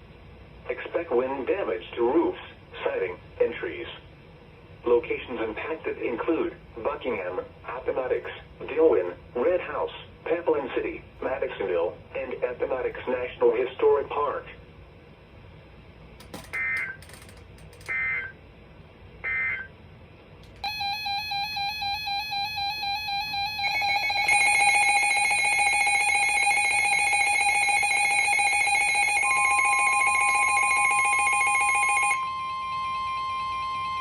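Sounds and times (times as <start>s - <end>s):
steady alert tones: 16.3s - 18.3s.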